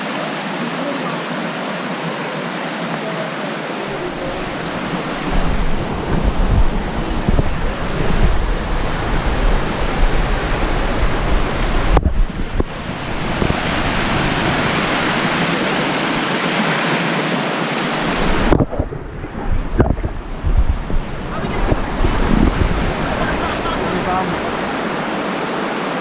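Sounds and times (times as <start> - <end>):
waterfall rushing: 0.0 - 26.0
wind buffeting microphone: 3.9 - 16.3, 17.9 - 25.2.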